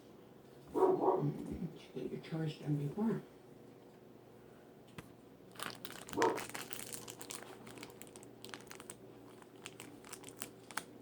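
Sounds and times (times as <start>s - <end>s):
plastic packaging crinkling: 5.5s - 11.0s.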